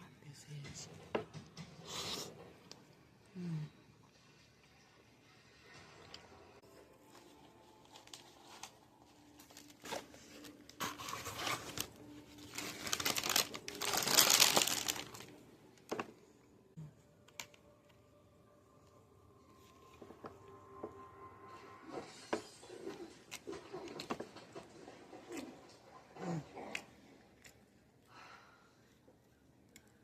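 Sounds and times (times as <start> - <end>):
paper wrapping crinkling and tearing: 7.0 - 16.1.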